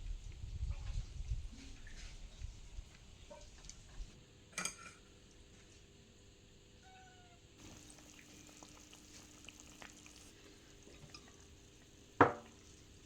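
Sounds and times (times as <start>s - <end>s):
cat meowing: 6.8s - 7.4s.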